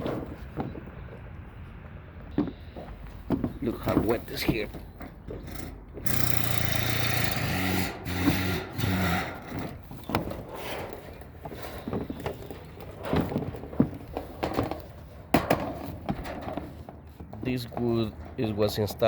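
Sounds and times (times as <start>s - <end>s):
knocks and scrapes: 0.0s - 1.4s, 2.3s - 18.8s
motor running: 6.0s - 9.5s.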